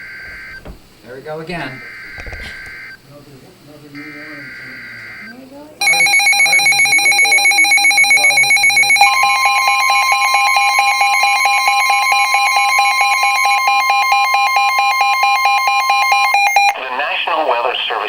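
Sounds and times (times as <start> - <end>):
two-tone alert signal: 4.0 - 16.7
pulsing electronic beep: 5.0 - 16.7.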